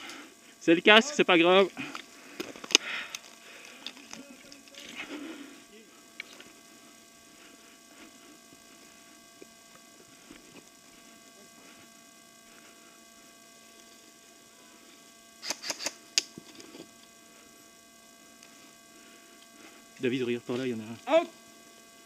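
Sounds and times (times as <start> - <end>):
electrical hum: 0.0 - 22.0
airsoft gun shots: 15.4 - 16.0.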